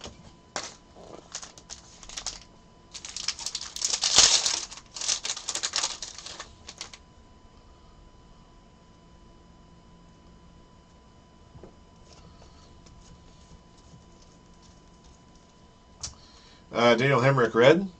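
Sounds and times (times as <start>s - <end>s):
cards and packaging clicking: 0.6s - 7.0s.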